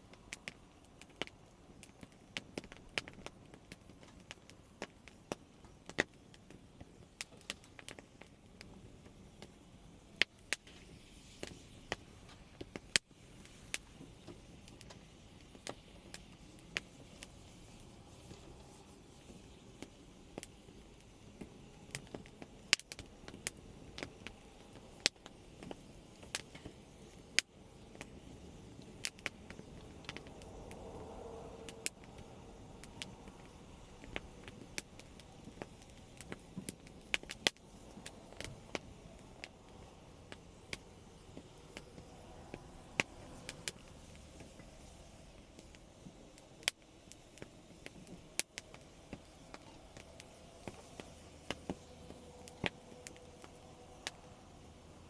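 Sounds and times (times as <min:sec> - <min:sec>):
campfire crackling: 0:00.0 - 0:55.0
distant car passing: 0:30.0 - 0:33.4.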